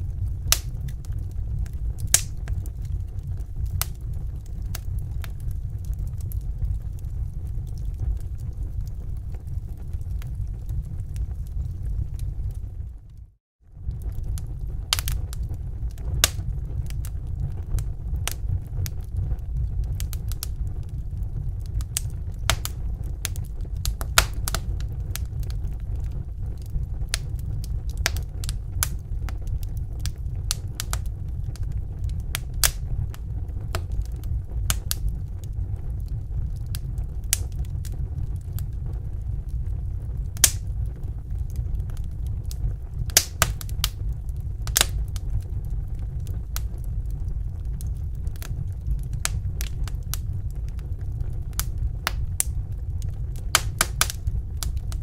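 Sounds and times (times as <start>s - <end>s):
fire crackling and popping: 0.0s - 55.0s
fire rumbling: 0.0s - 55.0s.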